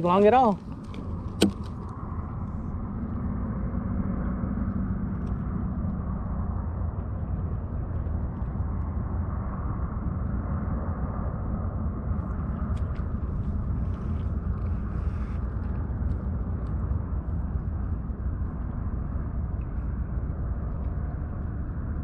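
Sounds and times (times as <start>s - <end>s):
engine drone: 0.0s - 22.0s
sharp click: 0.8s - 1.9s.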